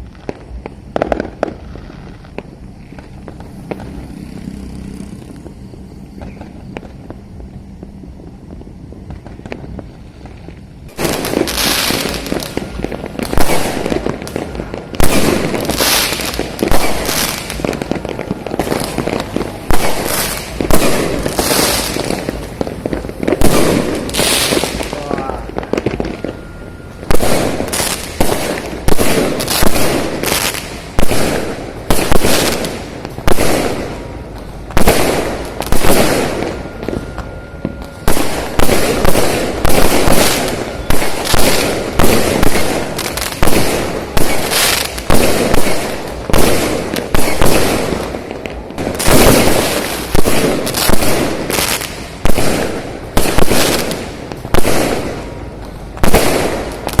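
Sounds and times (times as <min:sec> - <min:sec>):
fireworks bangs and crackling: 0:00.0 - 0:57.0.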